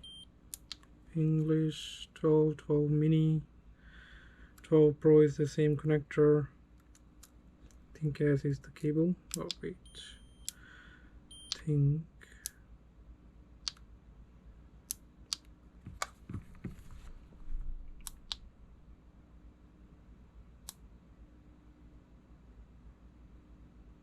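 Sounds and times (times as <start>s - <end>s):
soft rustle: 15.8s - 18.0s.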